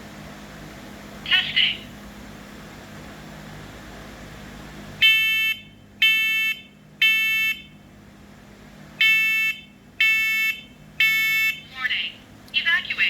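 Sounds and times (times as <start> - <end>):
shrill smoke alarm beeps: 5.0 - 7.7, 9.0 - 11.6.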